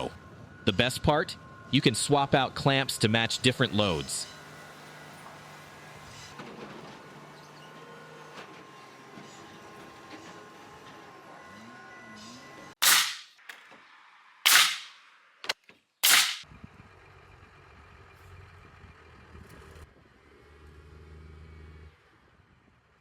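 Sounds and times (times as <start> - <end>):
sharp loud cracks: 12.8 - 13.6, 14.5 - 15.0, 16.0 - 16.4.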